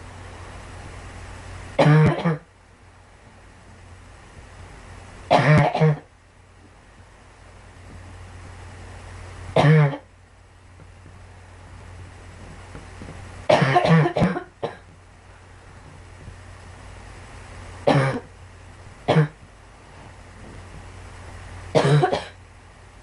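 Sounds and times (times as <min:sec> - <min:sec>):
girl coughing: 0:01.8 - 0:02.4, 0:05.3 - 0:06.0, 0:13.5 - 0:14.8, 0:17.9 - 0:18.3, 0:19.1 - 0:19.4, 0:21.8 - 0:22.4.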